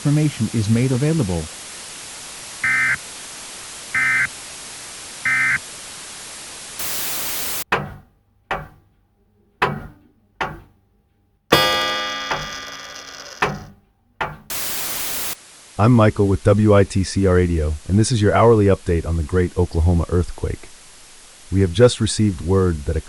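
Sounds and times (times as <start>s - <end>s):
data bursts: 2.6s - 3.0s, 3.9s - 4.3s, 5.2s - 5.6s, 6.8s - 7.6s, 14.5s - 15.4s
radio static: 2.6s - 3.1s, 3.9s - 4.4s, 5.2s - 5.7s, 6.8s - 7.6s, 14.5s - 23.0s
sharp thunks: 7.7s - 8.9s, 9.6s - 10.8s, 13.4s - 14.6s
loud ringing chord: 11.5s - 13.4s.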